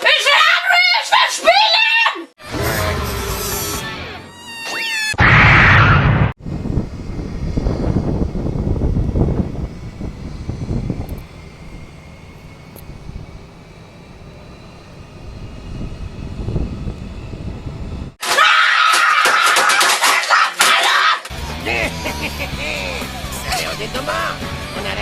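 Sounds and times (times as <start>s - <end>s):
low engine-like rumble: 6.4s - 18.2s.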